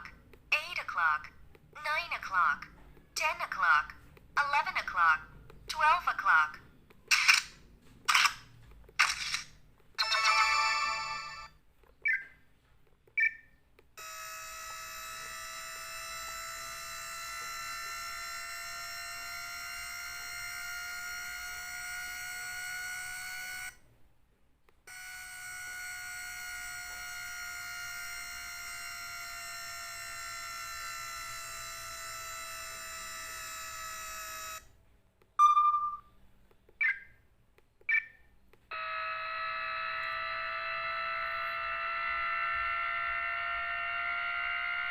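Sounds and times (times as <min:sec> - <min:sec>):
phone speaker short high beeps: 0:35.4 - 0:36.1.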